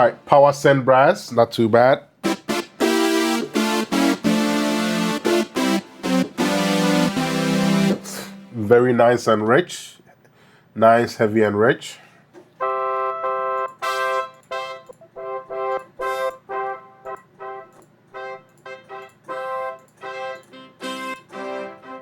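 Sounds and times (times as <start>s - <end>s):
synthesized brass chord stabs: 2.2s - 9.0s, 12.6s - 22.0s.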